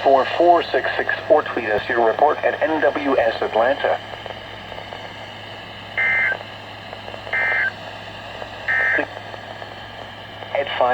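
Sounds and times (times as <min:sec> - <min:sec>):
radio hiss: 0:00.0 - 0:10.9
alert data tone bursts: 0:06.0 - 0:06.4, 0:07.3 - 0:07.7, 0:08.7 - 0:09.0.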